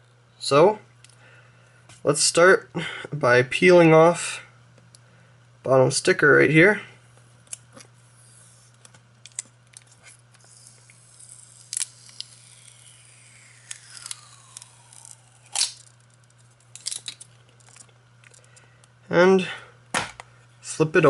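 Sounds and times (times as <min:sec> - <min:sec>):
sticker ripping: 0:13.6 - 0:15.9.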